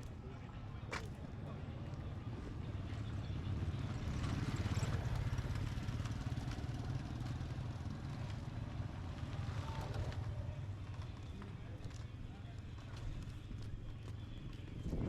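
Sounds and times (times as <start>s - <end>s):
vehicle engine running: 0.0s - 15.0s.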